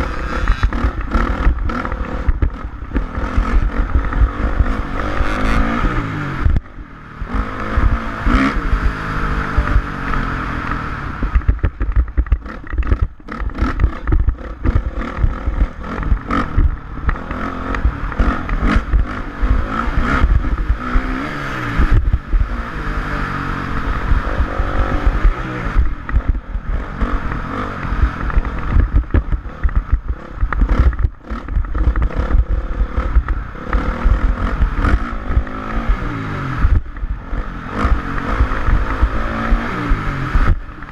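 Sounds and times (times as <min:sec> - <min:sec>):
motorcycle engine revving: 0:00.0 - 0:40.9
engine clatter: 0:11.2 - 0:40.9.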